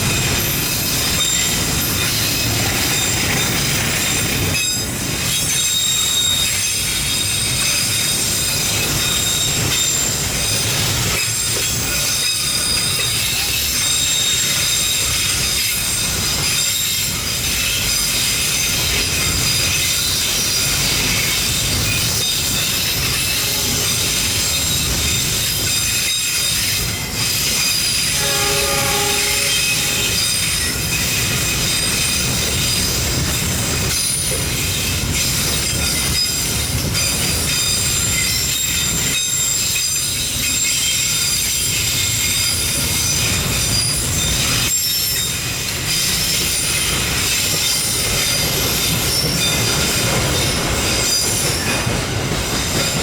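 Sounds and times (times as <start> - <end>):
train wheels rumbling on rails: 0.0 - 53.0
wheel squeal: 0.2 - 53.0
train horn blast: 28.1 - 30.4.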